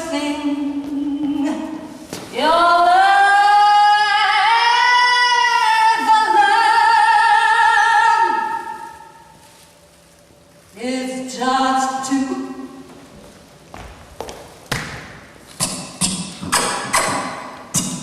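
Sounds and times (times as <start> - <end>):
woman singing wordlessly: 0.0 - 8.9, 10.8 - 12.7.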